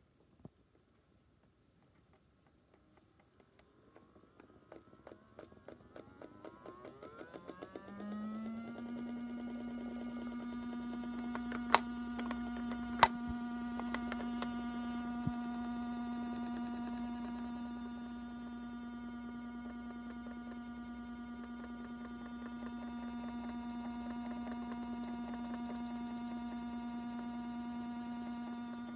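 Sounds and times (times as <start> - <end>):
washing machine electrical hum: 5.7 - 28.9
sharp clicks: 11.2 - 15.4.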